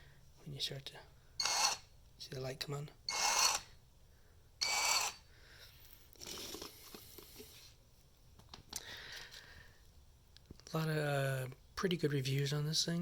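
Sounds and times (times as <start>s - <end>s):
impact wrench motor whirring: 1.4s - 1.8s, 3.1s - 3.7s, 4.6s - 5.2s.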